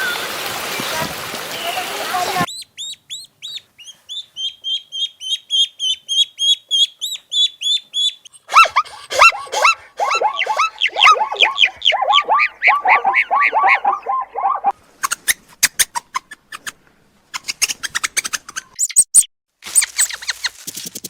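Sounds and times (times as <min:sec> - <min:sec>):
poultry calling: 0:02.5 - 0:15.2
high chirps: 0:02.5 - 0:15.4, 0:17.4 - 0:21.0.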